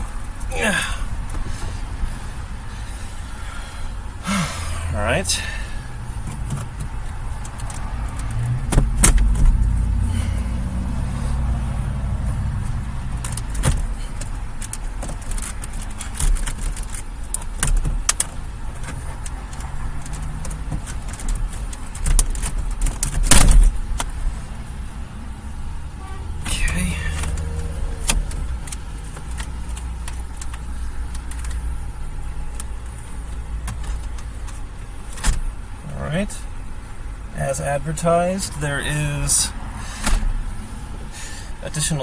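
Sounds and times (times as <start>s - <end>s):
low rumble: 1.0s - 14.5s
clicks and taps of dashboard parts: 6.2s - 9.7s, 12.6s - 24.2s, 26.4s - 31.8s, 32.4s - 35.5s.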